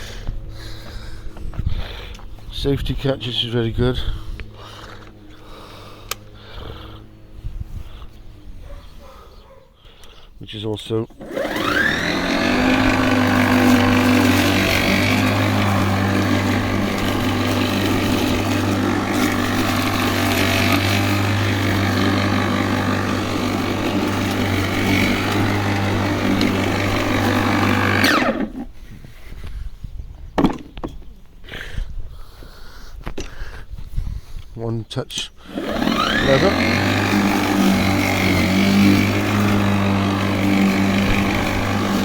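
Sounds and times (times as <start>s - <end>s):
lawnmower motor whining: 0.0s - 8.7s, 10.8s - 28.9s, 35.1s - 42.0s.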